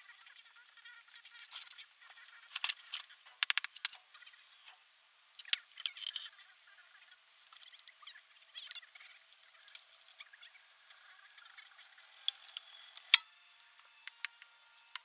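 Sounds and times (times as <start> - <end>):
tools clicking and tapping: 2.5 - 4.0, 12.3 - 15.0.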